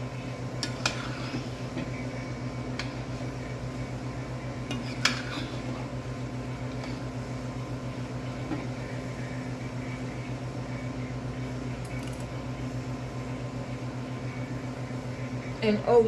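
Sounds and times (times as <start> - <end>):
vacuum pump drone: 0.0 - 16.0.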